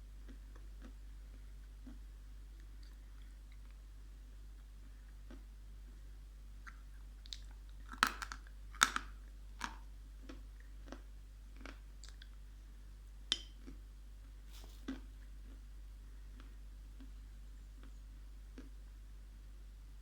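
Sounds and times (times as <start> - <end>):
chewing and crunching dried clay: 0.2 - 3.8, 6.6 - 12.4, 13.4 - 18.8.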